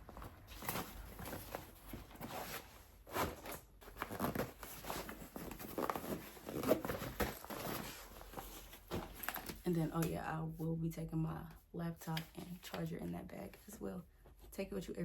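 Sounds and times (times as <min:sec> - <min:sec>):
items rustling and knocking: 0:00.0 - 0:10.2.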